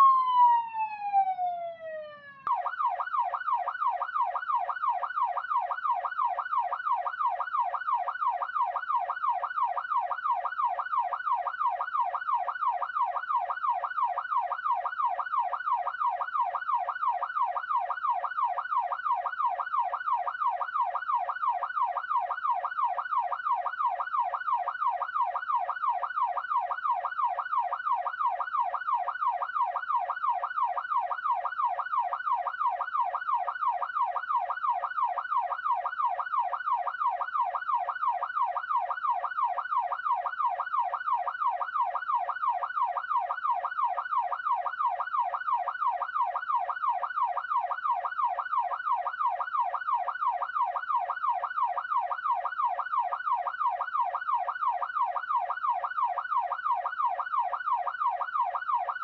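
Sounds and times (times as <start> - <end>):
police siren yelping: 0.0 - 59.0.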